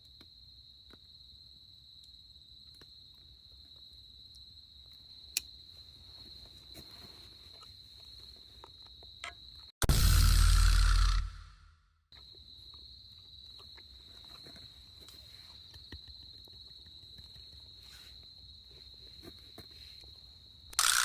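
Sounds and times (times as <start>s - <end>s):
crickets trilling: 12.1s - 21.0s
sharp click: 20.7s - 21.0s.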